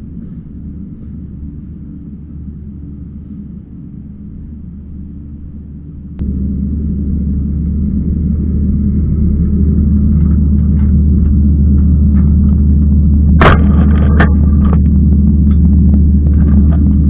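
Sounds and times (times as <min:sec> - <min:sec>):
diesel engine droning: 0:00.0 - 0:17.0
machine knocks and rattles: 0:10.1 - 0:17.0.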